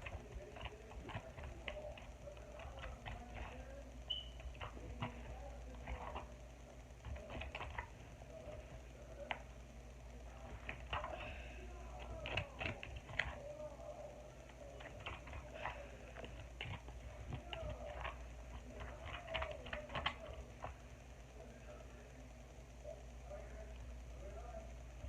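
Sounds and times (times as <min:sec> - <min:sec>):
spoon stirring slime in a bowl: 0:00.0 - 0:06.4.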